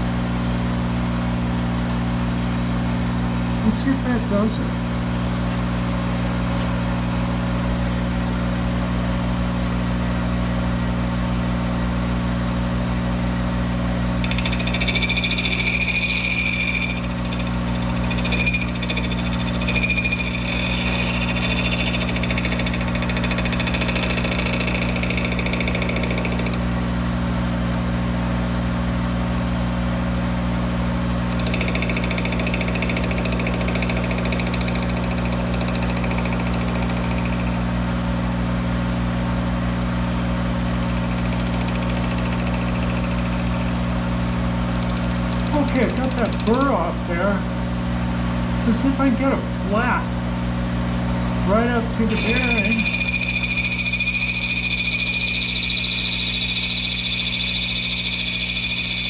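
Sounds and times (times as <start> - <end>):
lathe humming: 14.0 - 26.6, 31.3 - 37.6, 44.7 - 46.7, 52.0 - 59.0
cutting tool squealing: 14.2 - 26.6, 31.3 - 37.5, 44.8 - 46.7, 52.1 - 59.0.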